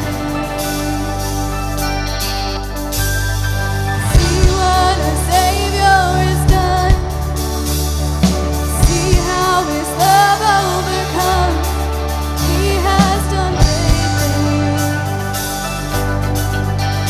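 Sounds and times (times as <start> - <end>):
band with bass and drums: 0.0 - 17.0
person singing: 4.0 - 16.9.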